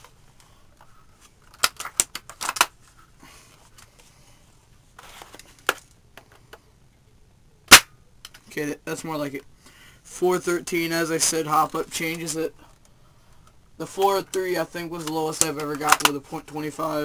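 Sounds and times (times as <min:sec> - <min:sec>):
rifle bolt clicks and rattles: 0:15.0 - 0:16.2.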